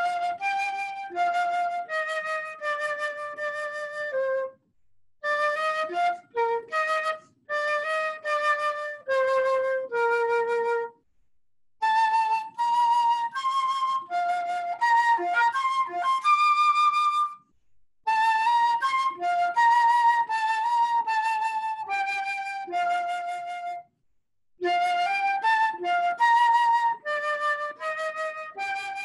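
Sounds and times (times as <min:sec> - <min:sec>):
solo flute playing hymn: 0:00.0 - 0:04.6, 0:05.2 - 0:11.0, 0:11.8 - 0:17.4, 0:18.1 - 0:23.8, 0:24.6 - 0:29.0.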